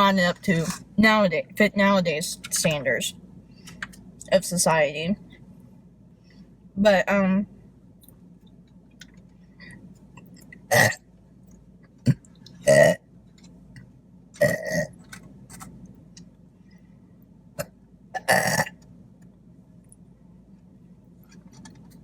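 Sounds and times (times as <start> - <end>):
short burps: 10.7 - 11.0, 12.0 - 13.0, 14.4 - 14.9, 17.6 - 18.7.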